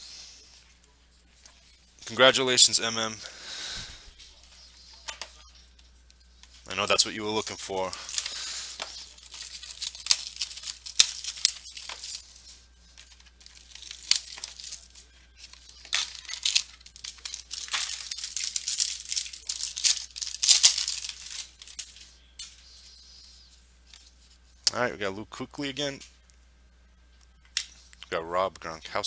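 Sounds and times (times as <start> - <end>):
wrapper crinkling and tearing: 6.6 - 22.6.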